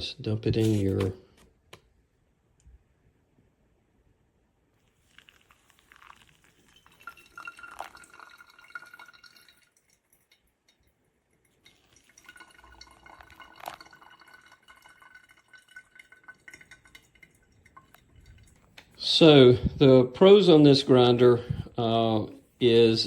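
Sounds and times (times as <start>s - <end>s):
liquid pouring into glass: 4.8s - 19.8s
glass clinking: 5.1s - 18.8s.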